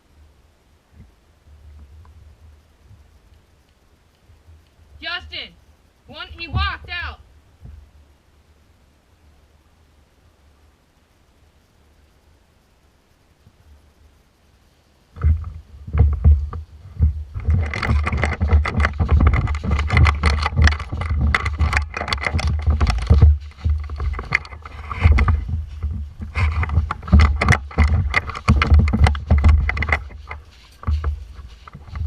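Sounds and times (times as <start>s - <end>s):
rumbling buffeting on microphone: 15.1s - 32.0s
camera rustling and knocking: 15.2s - 32.0s.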